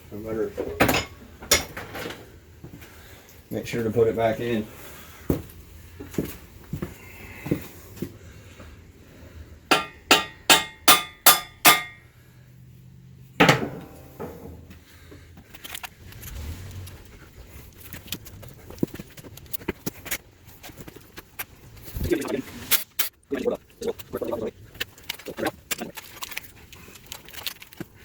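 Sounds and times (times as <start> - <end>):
ringing metal strikes: 9.7 - 12.0, 13.4 - 14.6
heavy metal clunk: 13.4 - 14.7.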